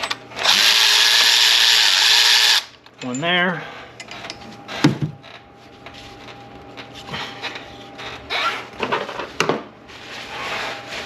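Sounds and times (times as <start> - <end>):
metal tools scraping and rattling: 3.0 - 4.8.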